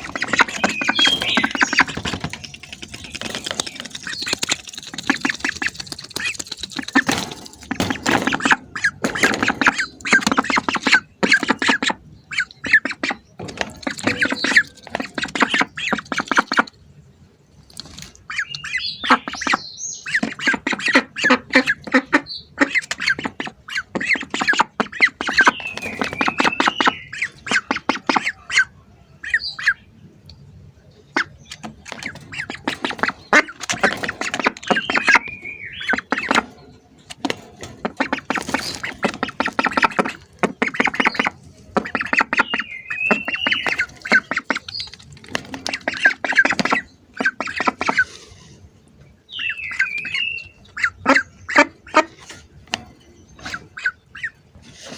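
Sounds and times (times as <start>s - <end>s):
ducks quacking: 0.0s - 16.8s, 18.1s - 30.0s, 31.0s - 54.9s.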